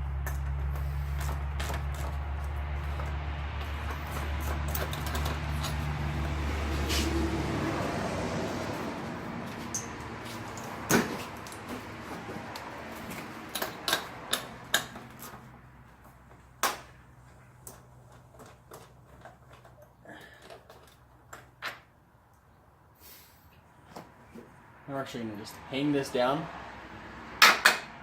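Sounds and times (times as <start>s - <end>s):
tools clicking and knocking: 2.8s - 6.4s, 12.5s - 15.5s.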